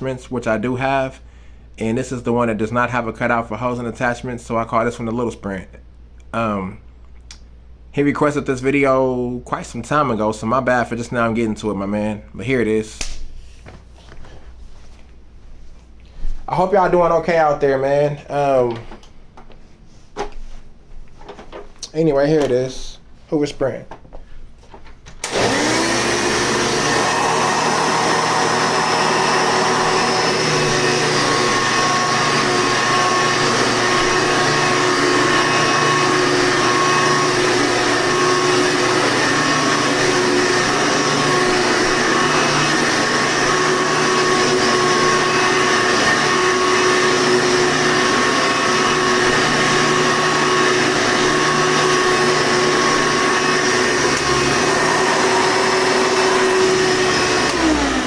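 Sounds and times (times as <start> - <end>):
vacuum cleaner motor whine: 25.2 - 58.0.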